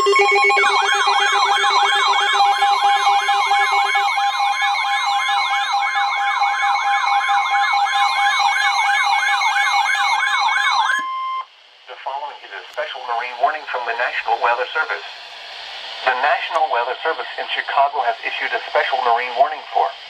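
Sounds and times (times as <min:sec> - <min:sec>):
warbling siren-like alarm: 0:00.0 - 0:11.5
rapid low beeping: 0:00.0 - 0:12.2
steady alarm tones: 0:00.0 - 0:20.0.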